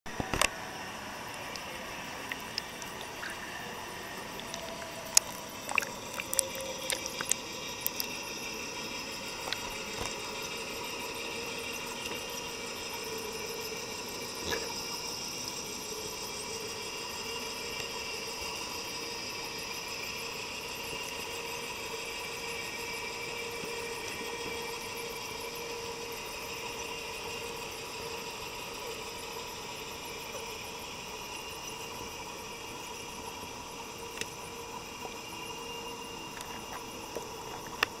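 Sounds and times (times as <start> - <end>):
pool vacuum motor whine: 0.1 - 38.0.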